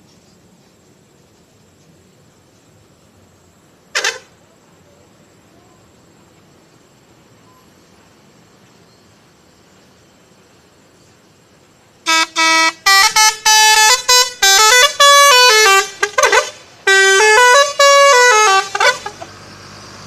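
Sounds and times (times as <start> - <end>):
low engine hum: 6.1 - 20.0
bus musical horn tune: 12.0 - 19.4.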